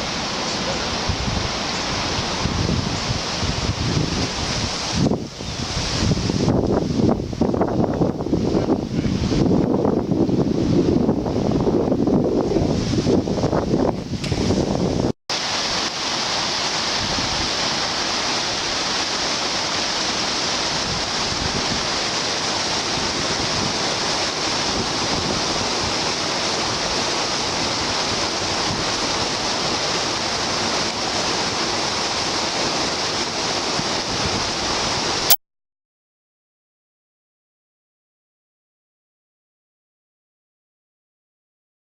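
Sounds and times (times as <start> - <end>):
flowing creek water: 0.0 - 9.8, 12.7 - 35.4.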